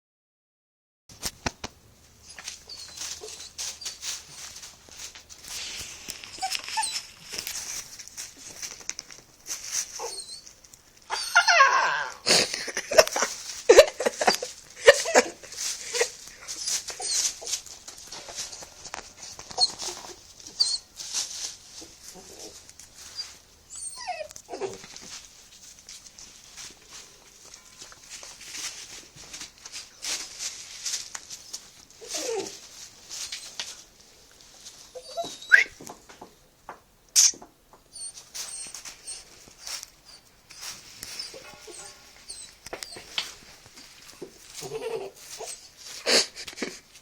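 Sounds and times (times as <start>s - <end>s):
puppies whining and yelping: 2.2s - 4.4s, 6.0s - 7.4s, 9.7s - 12.4s, 14.8s - 17.6s, 19.4s - 21.0s, 21.8s - 25.0s, 32.0s - 33.6s, 34.9s - 35.8s, 37.9s - 46.1s.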